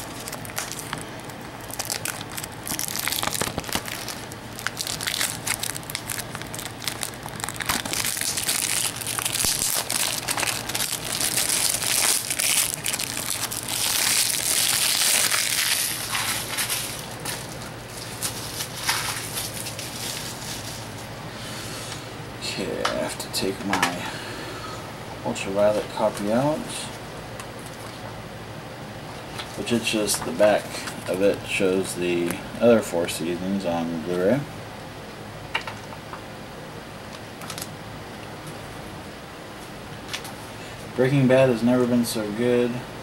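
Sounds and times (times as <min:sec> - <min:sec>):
plastic shrink-wrap crinkling: 0:00.0 - 0:21.1.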